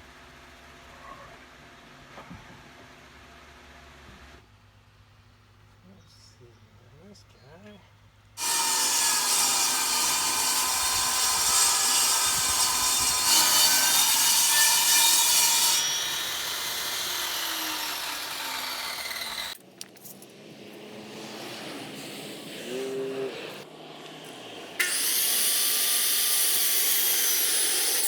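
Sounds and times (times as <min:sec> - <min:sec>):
power saw cutting board: 0:08.4 - 0:19.6, 0:24.8 - 0:28.0.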